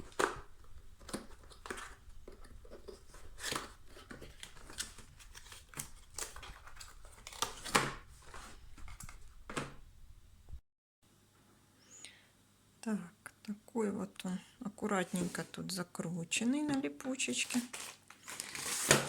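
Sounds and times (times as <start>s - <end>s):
cardboard and plastic rustling: 0.0s - 9.8s, 17.2s - 19.0s.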